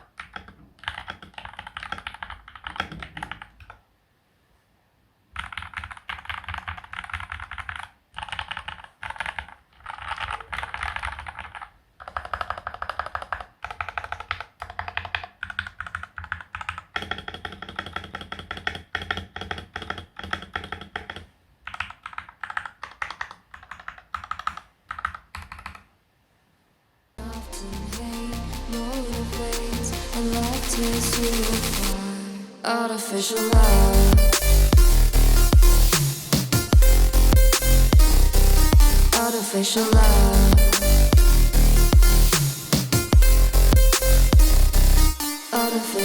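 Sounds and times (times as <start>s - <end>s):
mechanical keyboard typing: 0.0s - 3.8s, 5.3s - 25.9s
music: 27.2s - 32.5s, 33.3s - 46.0s.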